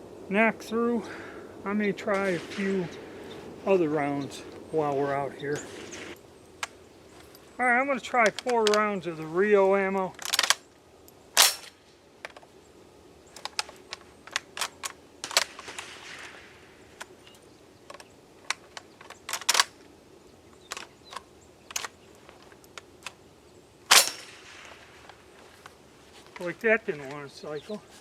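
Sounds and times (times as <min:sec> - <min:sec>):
shotgun action clicking: 0:10.2 - 0:10.6, 0:17.9 - 0:19.8, 0:20.6 - 0:23.2
shotgun shots: 0:11.4 - 0:11.8, 0:15.2 - 0:16.6, 0:23.9 - 0:25.0.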